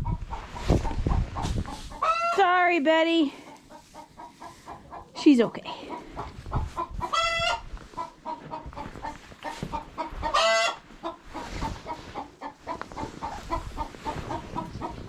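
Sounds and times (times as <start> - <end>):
chickens clucking: 0.0 - 2.4, 3.3 - 15.0
chicken squawks: 1.9 - 2.4, 7.0 - 8.6, 10.0 - 11.2.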